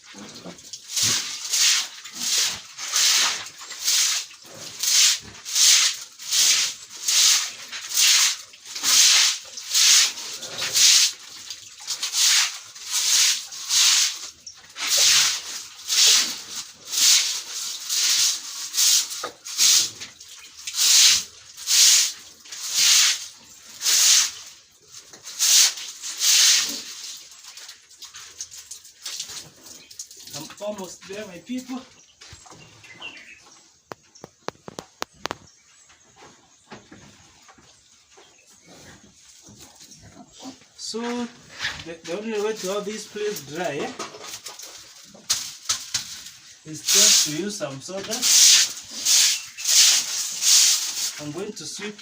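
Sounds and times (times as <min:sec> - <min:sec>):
stiff broom sweeping: 0:00.9 - 0:11.2, 0:11.9 - 0:19.9, 0:20.8 - 0:24.4, 0:25.2 - 0:27.2, 0:45.3 - 0:52.0.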